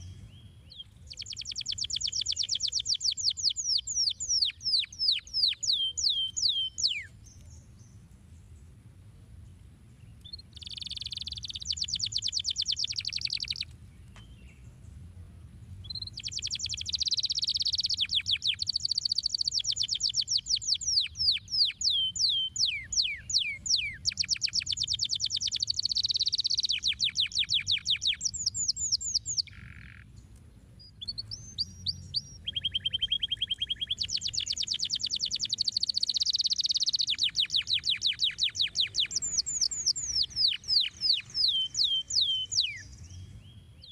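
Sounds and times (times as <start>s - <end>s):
canary singing: 0.0s - 7.7s, 10.2s - 14.5s, 15.8s - 30.1s, 30.8s - 43.9s.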